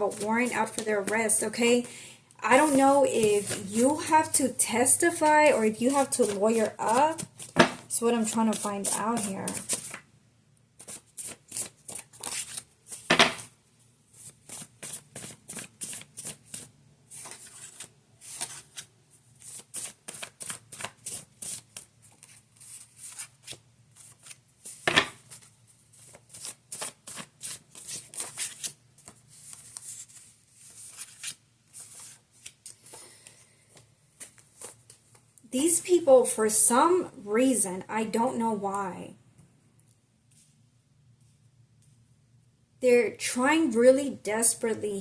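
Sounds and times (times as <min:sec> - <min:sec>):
cards being shuffled: 0:05.9 - 0:10.0, 0:10.8 - 0:13.5, 0:14.2 - 0:33.0, 0:33.7 - 0:35.3.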